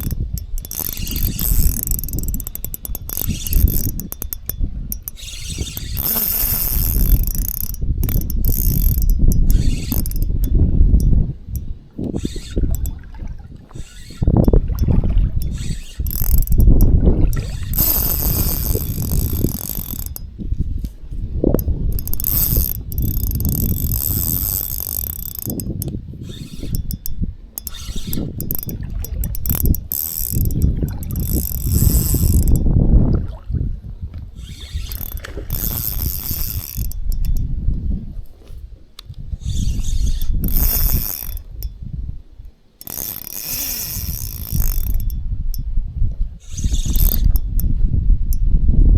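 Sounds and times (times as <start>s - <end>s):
fishing reel ratcheting: 0.0s - 32.8s, 34.4s - 37.5s, 39.3s - 41.9s, 42.8s - 45.7s, 46.4s - 48.5s
wind buffeting microphone: 0.0s - 48.9s.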